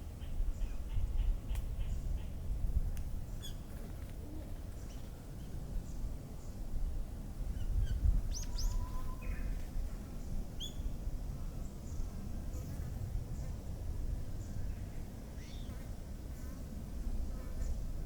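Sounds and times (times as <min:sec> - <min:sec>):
songbirds chirping: 0:03.2 - 0:18.0.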